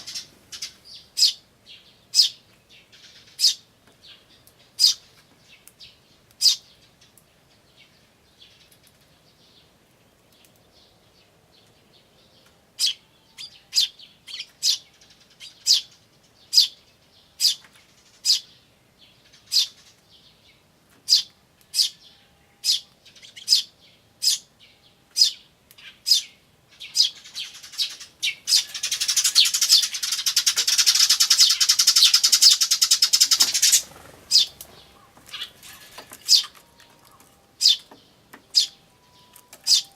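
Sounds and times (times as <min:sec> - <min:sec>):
sparrows chirping: 0:00.0 - 0:39.9
sparrow buzzy chatter: 0:26.8 - 0:38.8.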